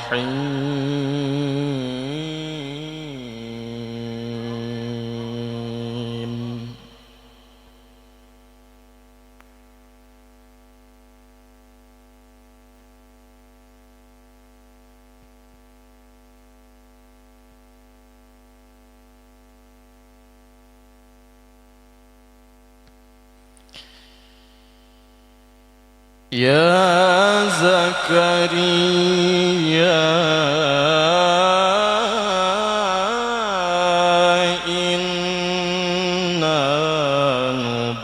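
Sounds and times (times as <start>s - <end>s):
electrical mains hum: 0.0s - 38.0s
faint click: 9.4s - 9.7s.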